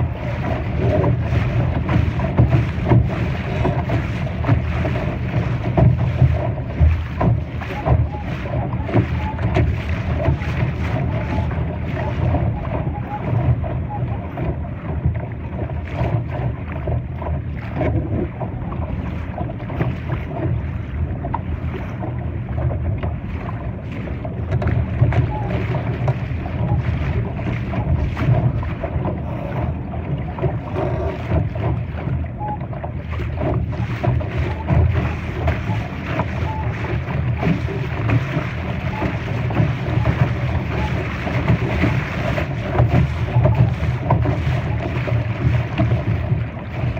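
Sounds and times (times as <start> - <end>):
short water splashes: 0.0 - 46.9
water rushing along boat hull: 0.0 - 46.9
wind rumbling on microphone: 0.0 - 46.9.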